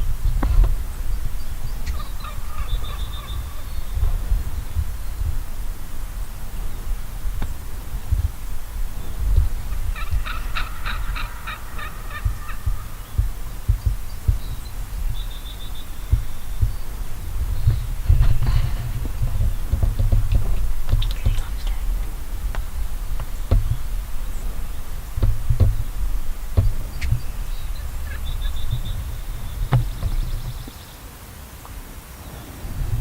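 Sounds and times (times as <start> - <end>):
low thumps on microphone: 0.0 - 30.8, 32.8 - 33.0
faint high bird chirps: 1.1 - 5.4, 8.8 - 21.9, 23.3 - 31.0
turkey gobbling: 1.8 - 4.2, 9.0 - 21.0, 22.7 - 30.7.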